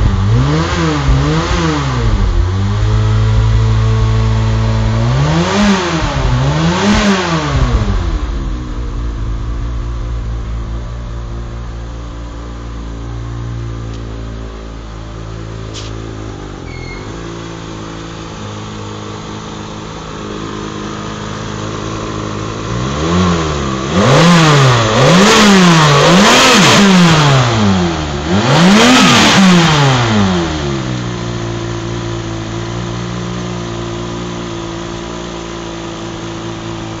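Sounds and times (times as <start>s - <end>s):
car engine idling: 0.0s - 37.0s
engine revving blips: 22.8s - 30.7s.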